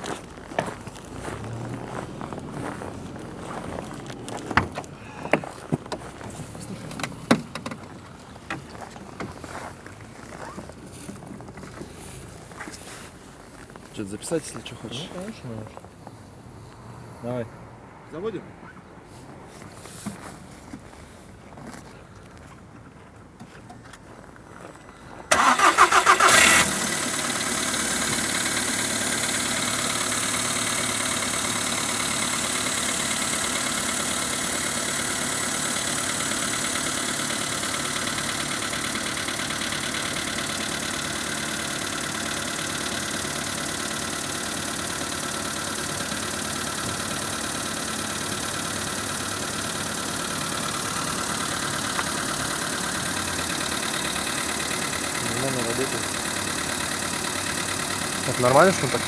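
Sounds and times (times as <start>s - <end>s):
car engine starting and idling: 0.0s - 18.4s, 23.2s - 59.0s.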